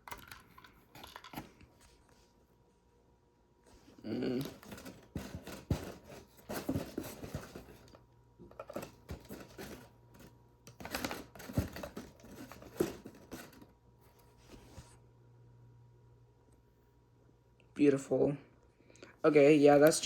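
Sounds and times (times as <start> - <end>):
objects clicking and knocking: 0.0 - 1.6.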